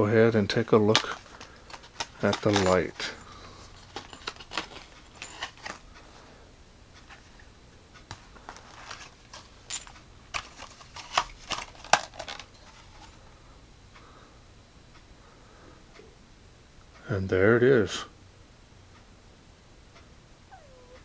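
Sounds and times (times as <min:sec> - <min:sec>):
packaging clicks and rustles: 0:00.4 - 0:06.2, 0:08.1 - 0:13.2.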